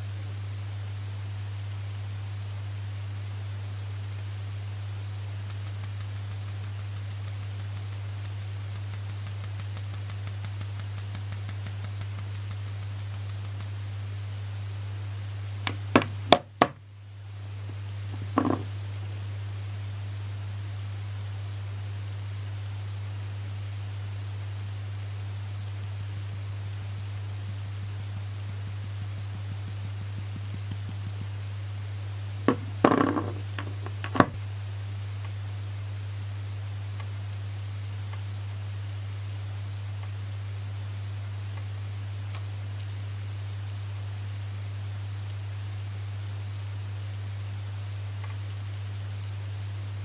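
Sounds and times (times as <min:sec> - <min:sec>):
steady low hum: 0:00.0 - 0:50.0
stylus tapping on phone screen: 0:18.2 - 0:18.7.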